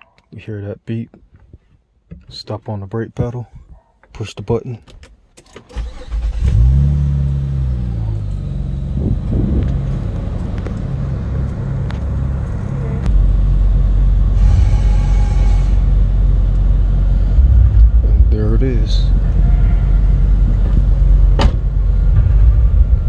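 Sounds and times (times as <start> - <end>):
car engine starting and idling: 5.4 - 23.0.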